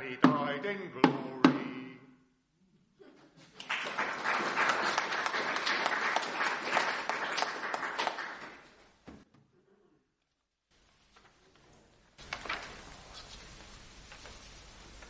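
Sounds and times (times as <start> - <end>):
audience applauding: 3.5 - 9.0.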